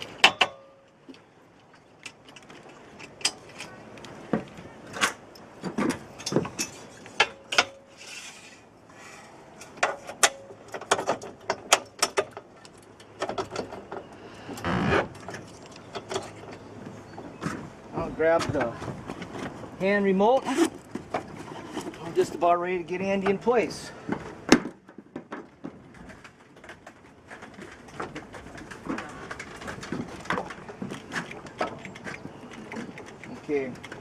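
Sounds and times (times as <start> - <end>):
brief scraping noises: 7.9 - 9.3.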